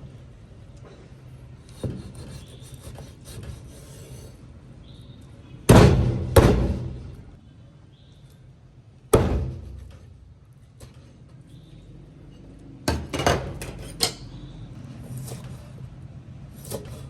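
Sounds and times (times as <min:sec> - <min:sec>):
scraping on wooden chopping board: 0:01.7 - 0:04.4.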